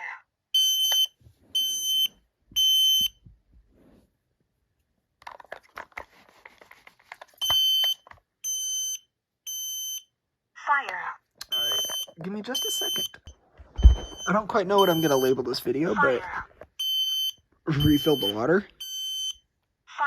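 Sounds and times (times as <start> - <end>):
high-pitched alarm beeps: 0.6 - 3.2, 7.4 - 10.1, 11.5 - 15.5, 16.8 - 19.4
rustling and clicking handling noise: 5.2 - 8.3.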